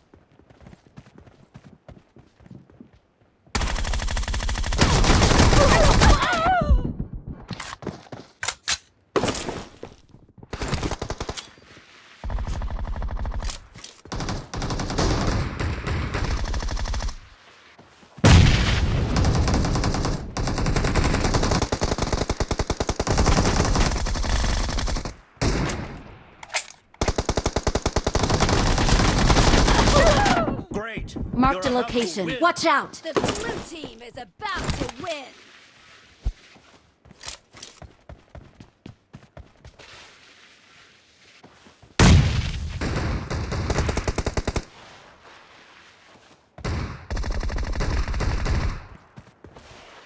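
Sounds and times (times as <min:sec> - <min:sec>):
video game automatic gunfire: 0:03.6 - 0:06.0, 0:14.1 - 0:17.2, 0:19.1 - 0:25.1, 0:27.0 - 0:30.2.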